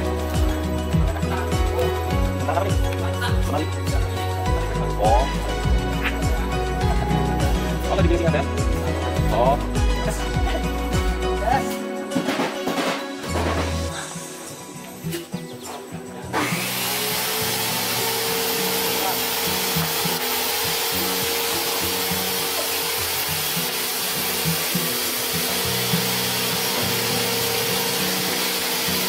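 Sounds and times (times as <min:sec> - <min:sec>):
background music: 0:00.0 - 0:29.0
power tool working wood: 0:16.2 - 0:29.0.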